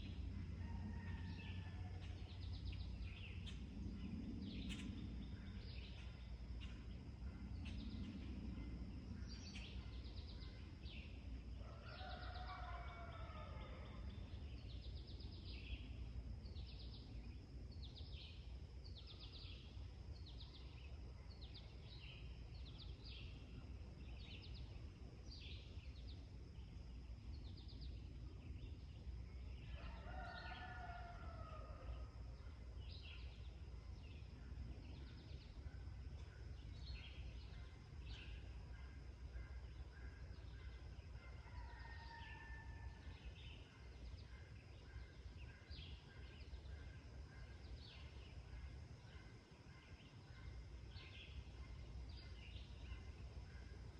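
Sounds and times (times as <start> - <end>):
steady low rumble: 0.0 - 11.6
songbirds chirping: 0.0 - 53.9
rooster crowing: 0.5 - 2.1, 11.6 - 14.0, 29.8 - 32.1.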